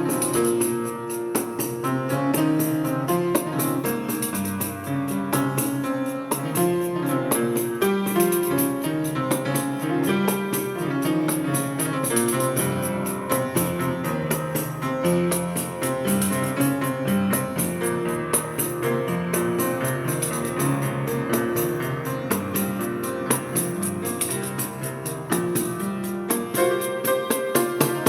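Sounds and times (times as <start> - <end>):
hand percussion ticking: 0.0 - 28.0
piano: 0.0 - 28.0.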